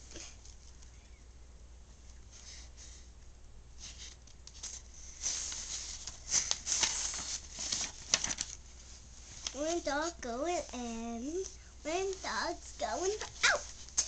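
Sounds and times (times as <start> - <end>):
paper pages rustling: 3.8 - 10.2.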